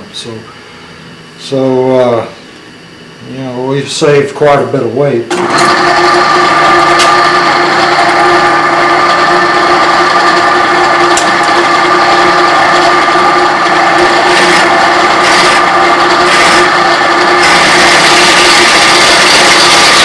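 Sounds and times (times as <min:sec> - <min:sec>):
drill press boring metal: 0:05.3 - 0:20.0.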